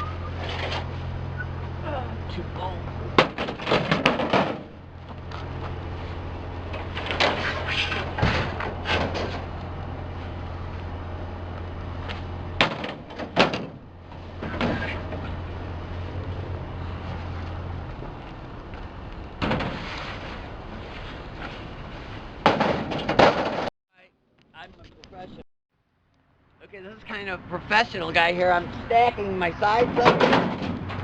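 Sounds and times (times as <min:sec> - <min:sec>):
steady low hum: 0:00.0 - 0:30.9
metal shelving clanking: 0:02.7 - 0:04.8, 0:06.7 - 0:09.6, 0:12.6 - 0:15.5, 0:22.4 - 0:23.7, 0:29.8 - 0:31.0.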